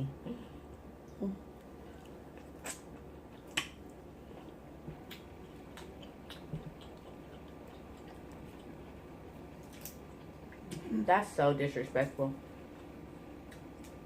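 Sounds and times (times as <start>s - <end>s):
wet chewing clicks and smacks: 1.6s - 10.8s, 12.7s - 14.0s.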